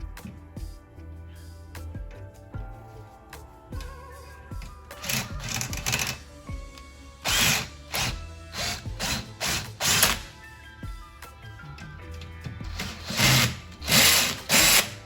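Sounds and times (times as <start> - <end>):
background music: 0.0 - 15.0
drill driving screws: 5.0 - 6.2, 7.2 - 10.3, 12.7 - 15.0.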